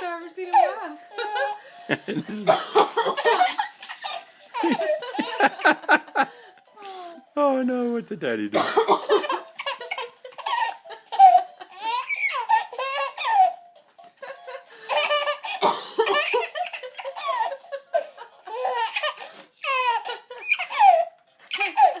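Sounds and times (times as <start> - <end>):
baby laughing: 0.0 - 7.1, 8.8 - 13.6, 14.9 - 22.0.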